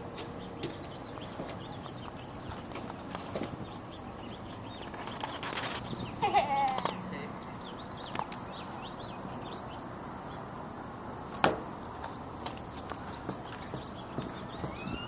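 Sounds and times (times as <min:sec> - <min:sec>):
faint bird chirps: 0:13.5 - 0:15.0.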